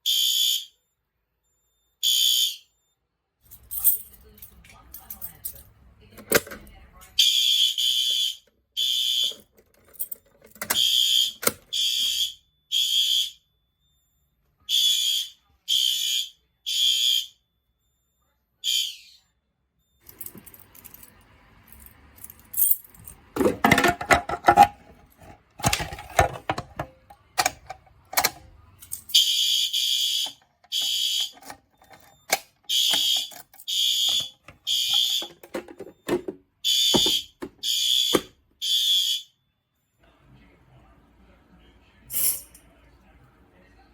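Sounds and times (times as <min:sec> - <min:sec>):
fire alarm horn beeping: 0:00.0 - 0:00.9, 0:01.5 - 0:03.0, 0:07.2 - 0:09.5, 0:10.6 - 0:19.1, 0:29.1 - 0:39.6
clattering handling noise: 0:03.5 - 0:06.7, 0:09.3 - 0:11.7, 0:20.0 - 0:29.2, 0:30.2 - 0:38.3.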